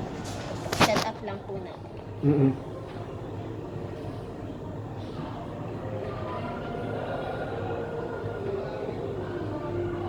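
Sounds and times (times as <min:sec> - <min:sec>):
faint distant voices: 0:00.0 - 0:10.0
faint music: 0:00.0 - 0:10.0.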